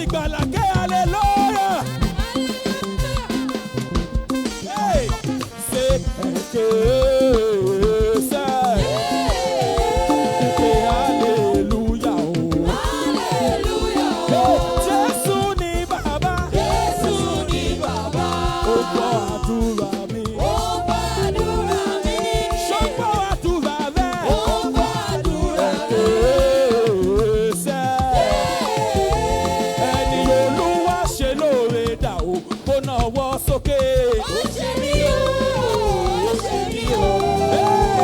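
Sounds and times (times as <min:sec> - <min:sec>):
church band praise music: 0:00.0 - 0:38.0
voices singing: 0:00.0 - 0:38.0.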